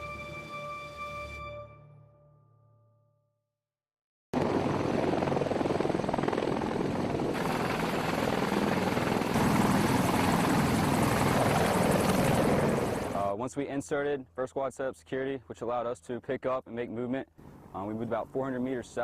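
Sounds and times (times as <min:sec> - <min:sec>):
helicopter rotor chop: 0:04.4 - 0:13.2.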